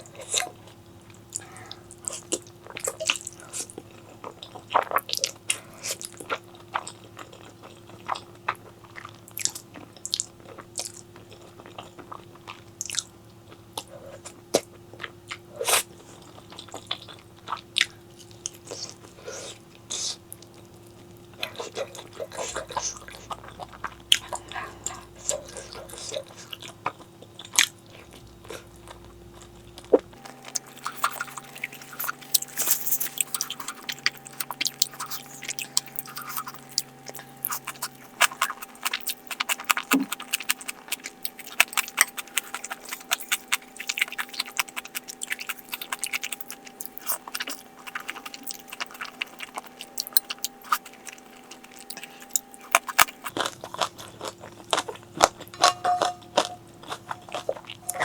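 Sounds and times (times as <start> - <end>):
chewing with crunchy bites: 0.0 - 58.0
wet mouth smacks: 29.9 - 53.3.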